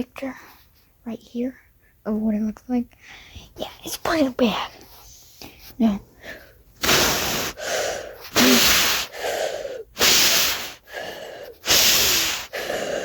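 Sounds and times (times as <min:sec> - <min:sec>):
person blowing puffs of breath: 0:06.3 - 0:13.0.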